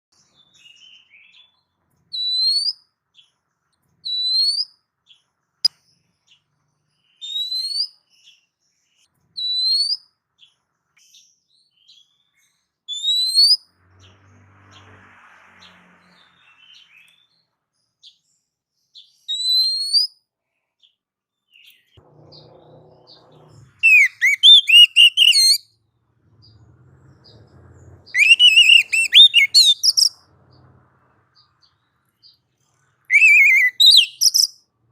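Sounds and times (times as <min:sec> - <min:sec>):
bird whistles sliding upward: 0:12.9 - 0:13.7, 0:23.8 - 0:25.6, 0:27.2 - 0:30.3, 0:33.1 - 0:34.5
bird song runs of tumbling notes: 0:21.5 - 0:34.5.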